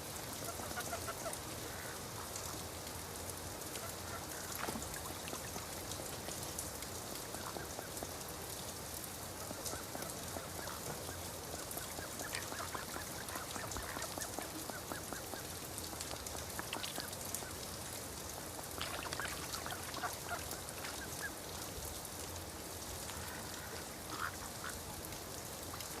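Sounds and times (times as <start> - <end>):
rain falling: 0.0 - 26.0
quack-like bird calls: 0.5 - 2.0, 23.1 - 24.8.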